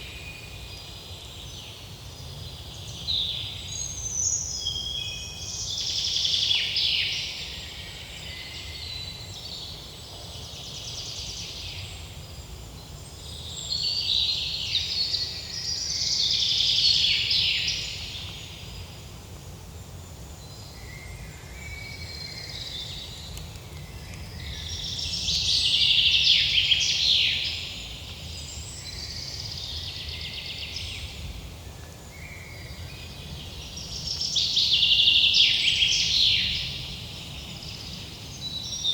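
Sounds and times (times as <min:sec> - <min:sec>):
birds singing: 0:20.1 - 0:38.9.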